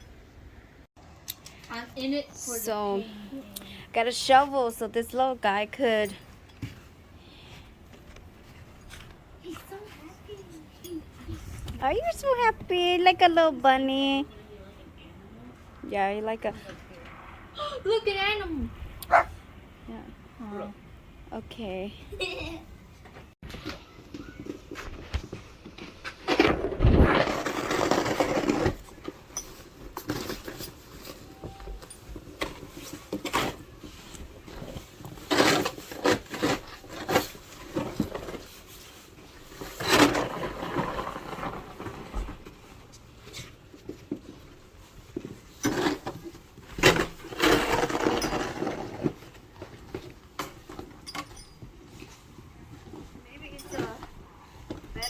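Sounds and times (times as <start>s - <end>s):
scraping: 24.1s - 55.0s.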